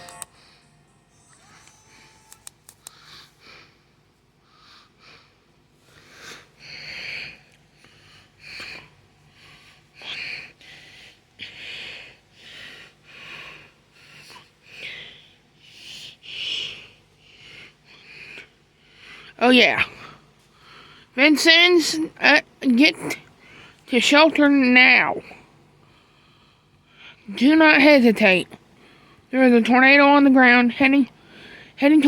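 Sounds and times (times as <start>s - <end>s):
person breathing close to microphone: 2.8s - 19.4s.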